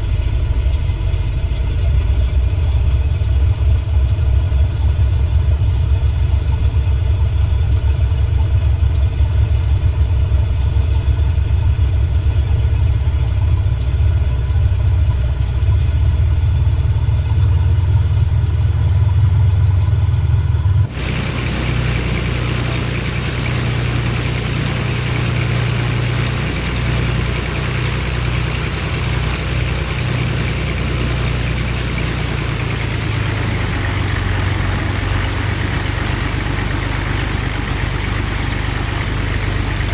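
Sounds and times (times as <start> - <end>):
engine humming: 0.0 - 39.9
hiss: 20.9 - 39.9.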